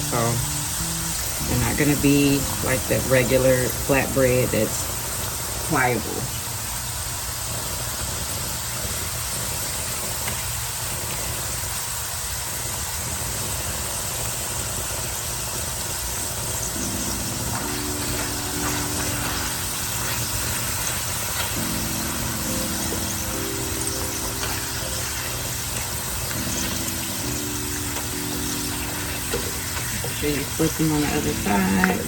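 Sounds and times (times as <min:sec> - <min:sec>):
low steady hum: 0:00.0 - 0:06.4
flatbread sizzling in oil: 0:00.0 - 0:32.0.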